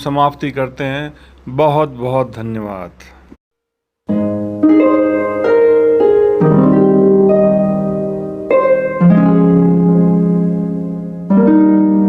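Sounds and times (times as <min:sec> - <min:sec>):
plucked ringing melody: 0:04.1 - 0:12.0.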